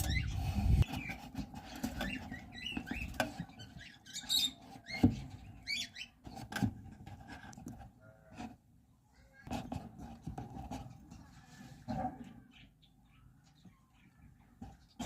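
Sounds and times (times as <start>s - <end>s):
lovebirds chirping and squeaking: 0.0s - 6.7s, 10.7s - 15.0s.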